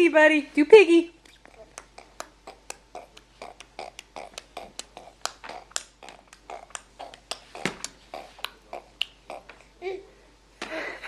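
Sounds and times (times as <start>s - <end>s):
baby imitating a pig: 1.2s - 10.1s.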